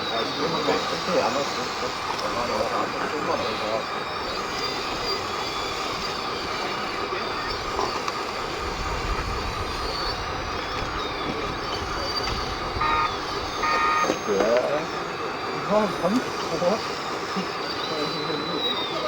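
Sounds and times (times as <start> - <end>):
electric motor whines: 0.0 - 19.0
model trucks mechanical din: 0.0 - 19.0
reversing beeper: 9.8 - 14.8.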